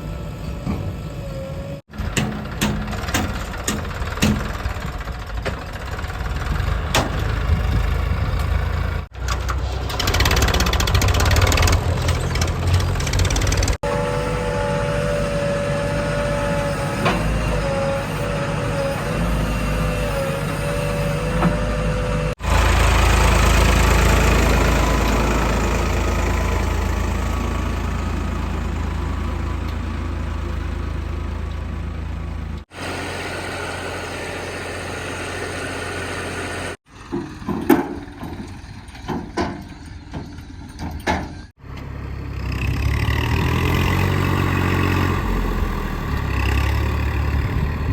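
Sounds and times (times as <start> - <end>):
diesel engines running: 0.0 - 47.9
heavy low engine rumble: 0.0 - 47.9
irregular knocks and clatter: 9.2 - 13.8.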